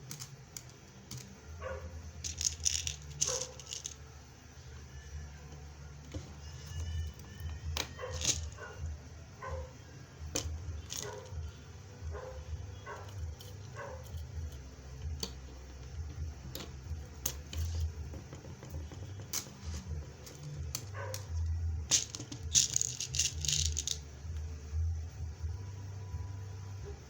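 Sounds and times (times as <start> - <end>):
metal rivets rattling: 2.2 - 4.0, 6.7 - 8.7, 20.2 - 24.0.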